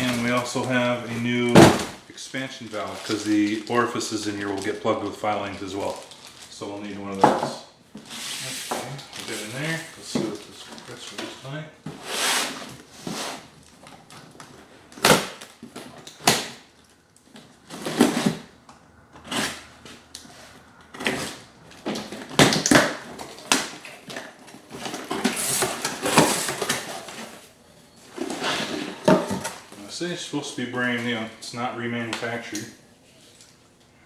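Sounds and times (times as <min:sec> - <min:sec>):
cardboard packaging rustling: 0:00.0 - 0:18.6, 0:19.2 - 0:33.6
sharp knocks and cracks: 0:21.0 - 0:27.2.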